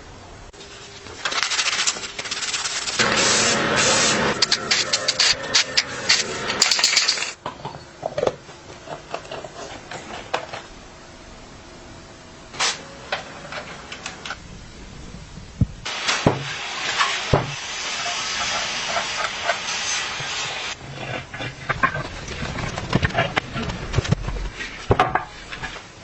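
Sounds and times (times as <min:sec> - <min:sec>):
hissing noise: 0:00.6 - 0:07.4, 0:14.5 - 0:21.2.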